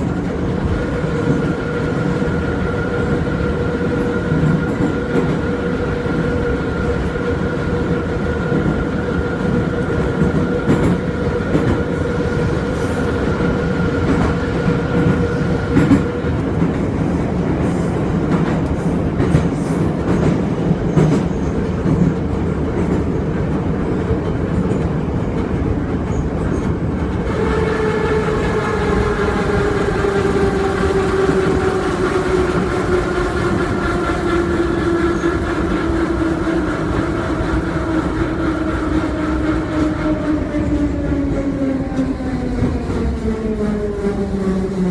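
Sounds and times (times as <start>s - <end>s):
train rumble: 0.0s - 44.9s
train wheels clacking over rail joints: 13.9s - 41.1s.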